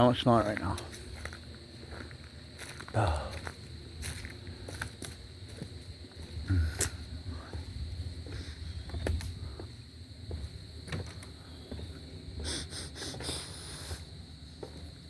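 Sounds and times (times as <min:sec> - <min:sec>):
insect chorus: 0:00.0 - 0:15.0.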